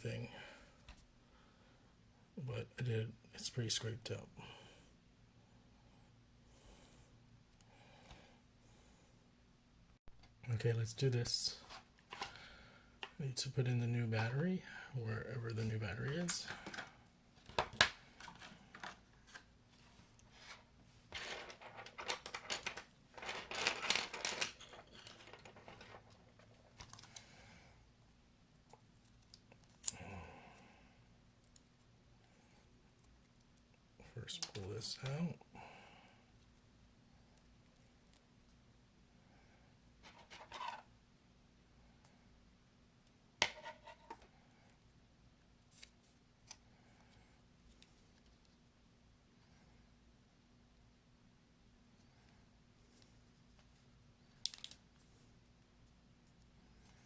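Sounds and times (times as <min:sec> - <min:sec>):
plastic packaging rustling: 0:21.2 - 0:27.1.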